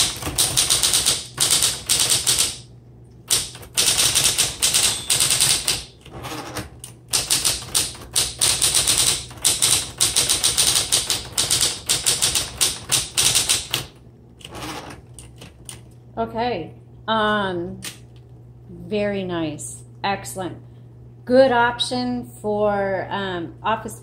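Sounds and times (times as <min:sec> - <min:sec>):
typewriter key strikes: 0:00.0 - 0:02.6, 0:03.3 - 0:13.9
typewriter motor hum: 0:00.0 - 0:16.0.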